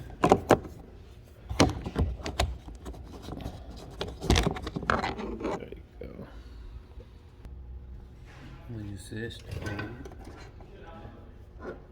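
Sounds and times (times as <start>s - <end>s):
tools clicking and knocking on parts: 0.0s - 0.8s, 1.5s - 5.6s.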